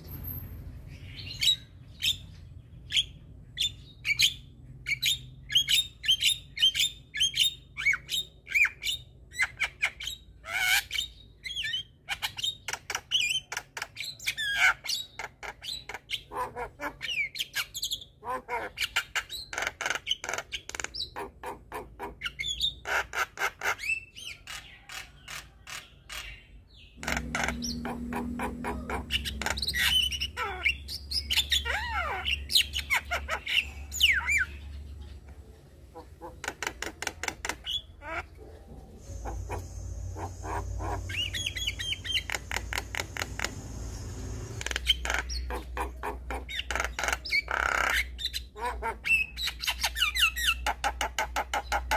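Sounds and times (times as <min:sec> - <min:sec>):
myna bird calling: 0:00.2 - 0:51.9
steady low hum: 0:27.0 - 0:31.6, 0:38.3 - 0:46.3.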